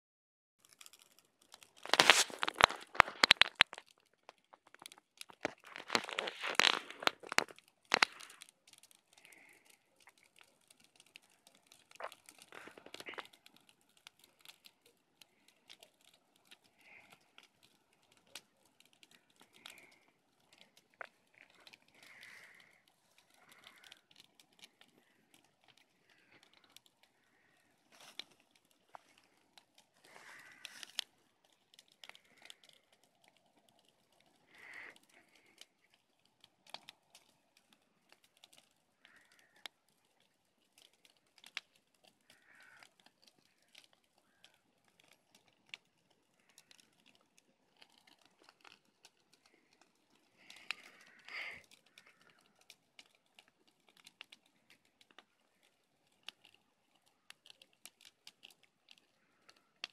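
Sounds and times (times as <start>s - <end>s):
campfire crackling: 0.6s - 59.9s.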